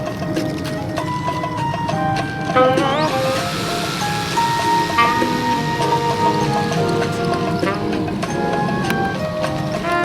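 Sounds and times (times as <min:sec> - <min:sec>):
held chord music: 0:00.0 - 0:10.0
short gliding note: 0:02.6 - 0:10.0.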